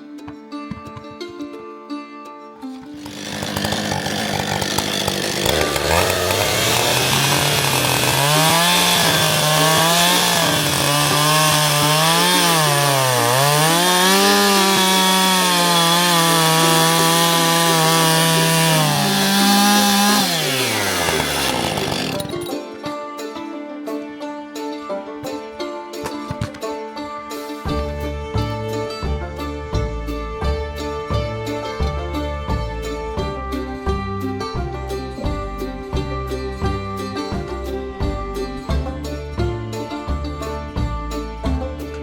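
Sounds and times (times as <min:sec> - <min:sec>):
chainsaw cutting timber: 0:02.9 - 0:22.8.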